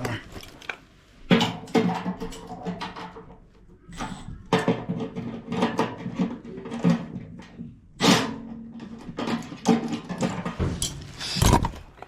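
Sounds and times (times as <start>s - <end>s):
metallic clinks and scrapes of tools: 8.9s - 11.8s.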